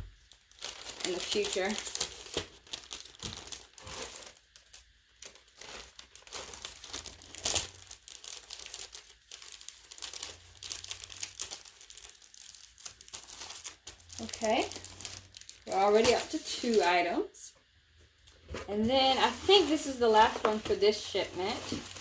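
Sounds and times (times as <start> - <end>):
packaging crinkling: 0.2 - 17.1, 18.2 - 22.0.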